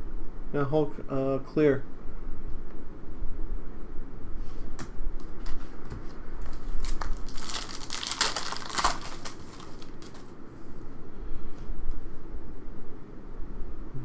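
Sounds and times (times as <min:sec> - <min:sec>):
wrapper crinkling and tearing: 0:06.4 - 0:10.3.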